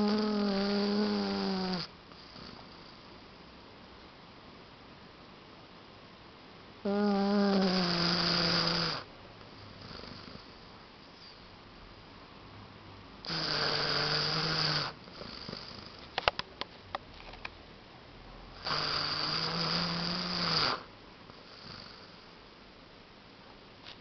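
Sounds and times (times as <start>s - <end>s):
dog snoring: 0.0s - 3.1s, 6.8s - 10.7s, 13.2s - 16.1s, 18.6s - 22.3s.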